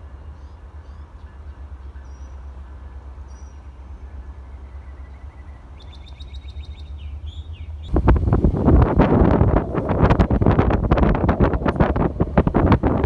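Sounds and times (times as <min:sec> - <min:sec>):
birds chirping: 0:03.3 - 0:10.6
steady low rumble: 0:06.7 - 0:13.0
wind buffeting microphone: 0:07.8 - 0:13.0.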